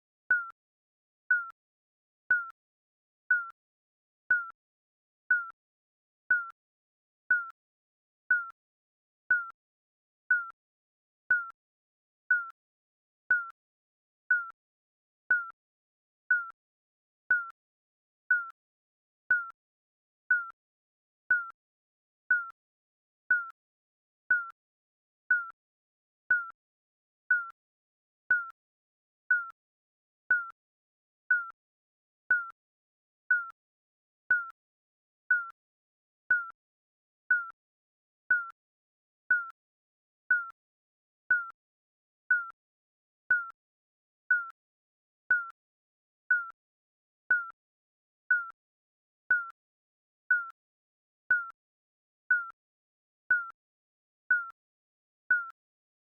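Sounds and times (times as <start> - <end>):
timer beeping: 0.3 - 0.6, 1.3 - 1.5, 2.3 - 2.6, 3.3 - 3.6, 4.3 - 4.6, 5.3 - 5.6, 6.3 - 6.6, 7.3 - 7.6, 8.3 - 8.6, 9.3 - 9.6, 10.3 - 10.6, 11.3 - 11.6, 12.3 - 12.5, 13.3 - 13.5, 14.3 - 14.5, 15.3 - 15.6, 16.3 - 16.5, 17.3 - 17.5, 18.3 - 18.5, 19.3 - 19.6, 20.3 - 20.6, 21.3 - 21.6, 22.3 - 22.6, 23.3 - 23.5, 24.3 - 24.6, 25.3 - 25.6, 26.3 - 26.6, 27.3 - 27.6, 28.3 - 28.5, 29.3 - 29.6, 30.3 - 30.6, 31.3 - 31.6, 32.3 - 32.6, 33.3 - 33.6, 34.3 - 34.6, 35.3 - 35.6, 36.3 - 36.6, 37.3 - 37.6, 38.3 - 38.6, 39.3 - 39.6, 40.3 - 40.6, 41.3 - 41.6, 42.3 - 42.6, 43.3 - 43.6, 44.3 - 44.5, 45.3 - 45.6, 46.3 - 46.6, 47.3 - 47.6, 48.3 - 48.6, 49.3 - 49.6, 51.3 - 51.6, 52.3 - 52.6, 53.3 - 53.6, 54.3 - 54.6, 55.3 - 55.6.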